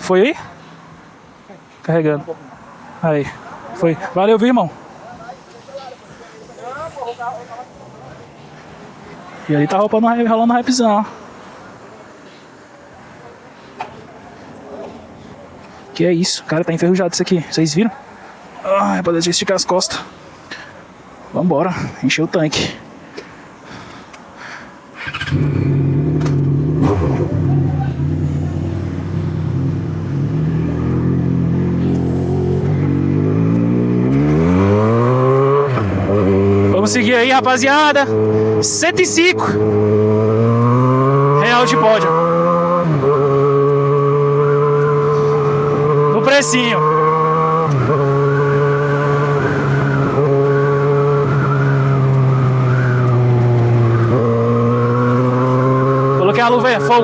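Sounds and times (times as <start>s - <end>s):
motorcycle engine revving: 25.0s - 57.0s.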